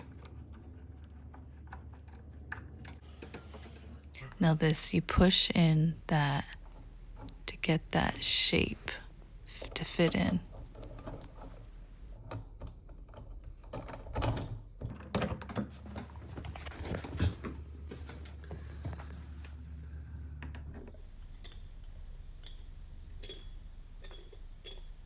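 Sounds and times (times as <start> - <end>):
lock parts clicking and knocking: 12.2 - 19.2.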